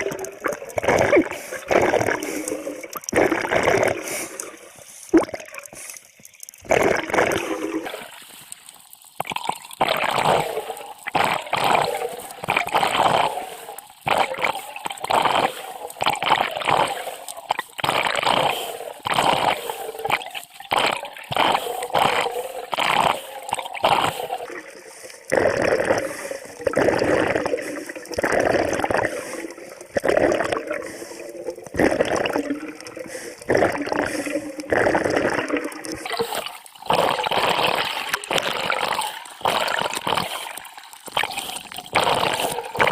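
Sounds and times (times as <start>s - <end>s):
exhaled bubbles gurgling underwater: 0.0s - 42.9s.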